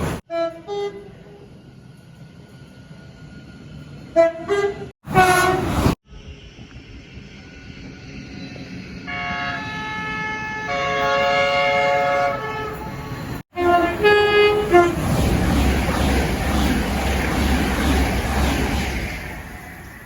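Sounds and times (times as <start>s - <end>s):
train rumbling past: 0.0s - 20.0s
short lower horn blasts: 4.2s - 5.7s, 13.5s - 15.0s
train horn chord: 4.2s - 5.7s, 9.1s - 12.9s, 13.5s - 15.0s.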